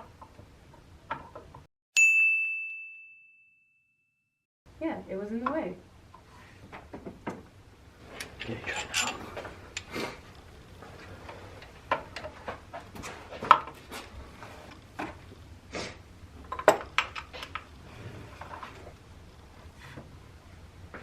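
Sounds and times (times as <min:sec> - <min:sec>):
metal tools clinking and knocking: 0:08.0 - 0:13.9.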